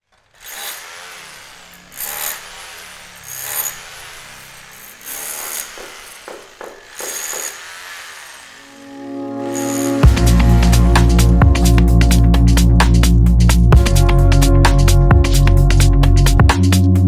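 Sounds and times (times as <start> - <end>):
hand tool rasping: 0.0 - 8.8.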